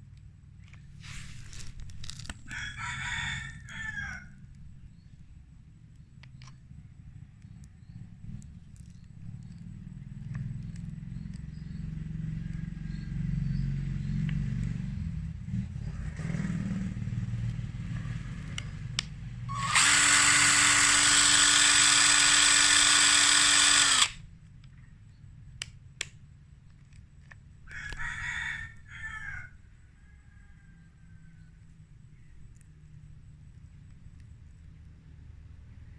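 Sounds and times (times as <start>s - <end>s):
impact wrench whirring: 19.5s - 24.2s.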